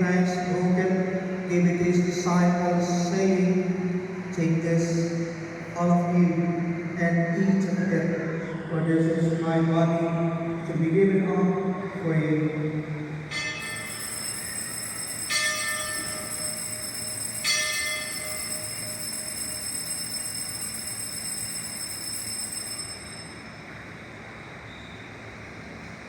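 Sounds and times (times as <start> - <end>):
high bell ringing: 13.3 - 24.1.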